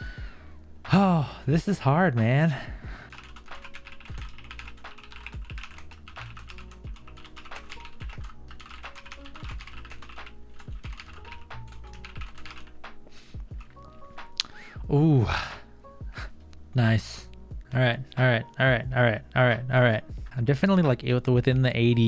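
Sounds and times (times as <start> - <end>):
lo-fi music with soft beat: 0.0 - 22.0
fast typing on keyboard: 3.1 - 12.8, 13.5 - 13.8.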